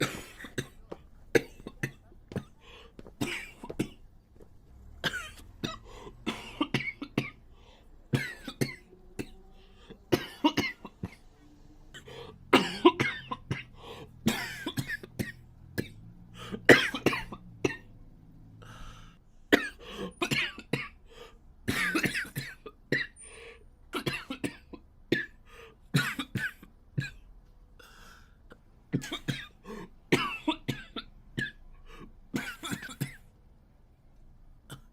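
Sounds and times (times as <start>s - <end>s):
boy coughing: 0.0s - 4.0s, 5.0s - 7.4s, 8.1s - 11.3s, 12.0s - 16.0s, 16.6s - 17.9s, 19.5s - 21.0s, 21.7s - 23.2s, 29.0s - 31.7s, 32.3s - 33.2s.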